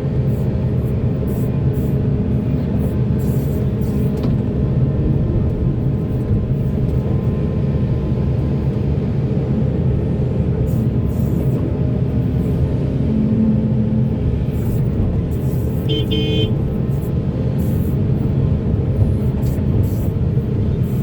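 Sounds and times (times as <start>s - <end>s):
heavy diesel machinery drone: 0.0s - 21.0s.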